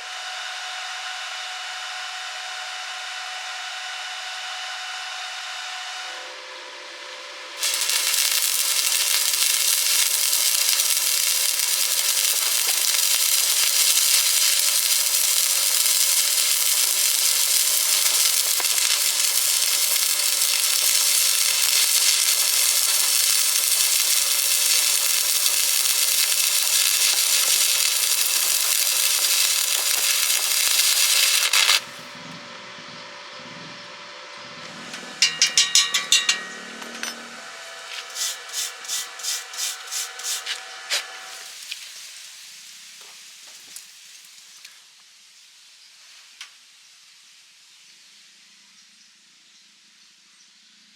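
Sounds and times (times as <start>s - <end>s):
welding arc crackling: 7.6s - 32.1s, 34.6s - 43.9s.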